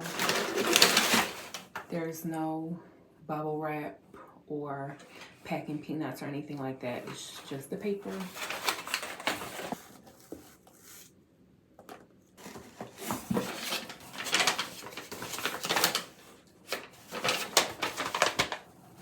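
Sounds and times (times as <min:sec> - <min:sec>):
packing paper rustling: 0:00.0 - 0:01.9, 0:07.0 - 0:11.1, 0:12.4 - 0:19.0.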